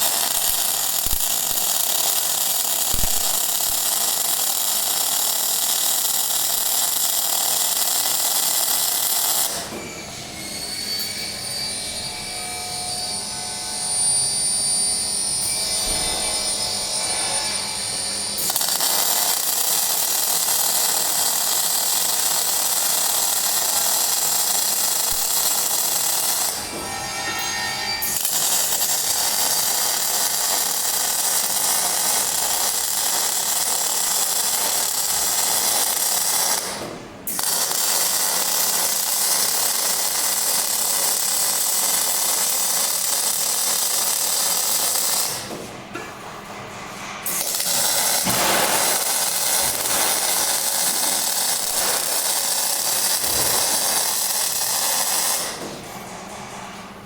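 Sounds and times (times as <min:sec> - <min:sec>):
arc welding crackling hiss: 0:00.0 - 0:09.7, 0:18.4 - 0:26.7, 0:28.0 - 0:45.5, 0:47.3 - 0:55.6.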